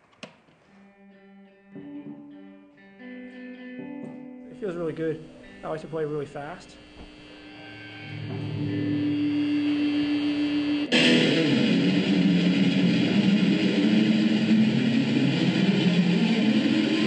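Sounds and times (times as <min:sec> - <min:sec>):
electric guitar playing: 0:00.7 - 0:17.0.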